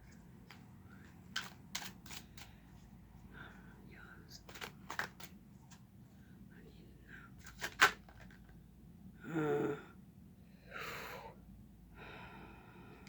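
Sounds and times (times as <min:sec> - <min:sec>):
person sighing: 0:09.2 - 0:10.0, 0:10.7 - 0:11.4.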